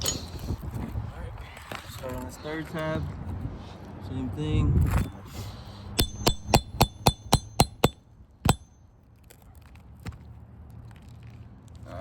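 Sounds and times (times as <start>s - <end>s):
hammer striking metal: 6.0s - 8.8s.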